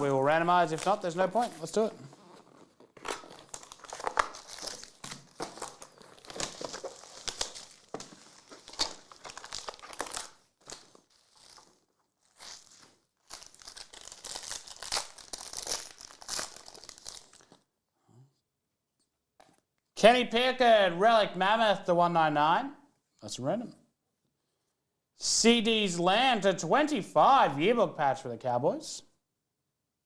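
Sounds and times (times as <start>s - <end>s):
plastic wrappers tearing and crinkling: 0.0s - 17.6s.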